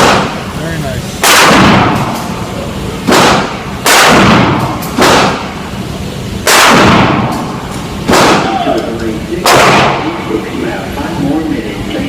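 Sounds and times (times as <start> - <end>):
shotgun blasts with echo: 0.0 - 0.6, 1.2 - 2.4, 3.0 - 5.6, 6.4 - 8.7, 9.4 - 10.2.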